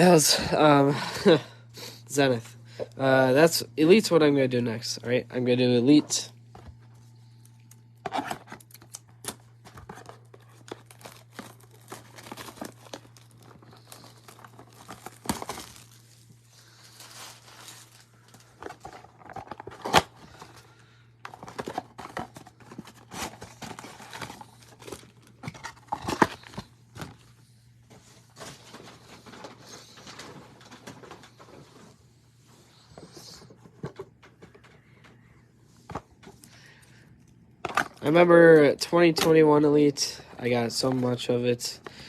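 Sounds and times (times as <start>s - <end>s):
steady low hum: 0.0s - 42.0s
plastic wrapping crinkling and tearing: 7.6s - 27.2s.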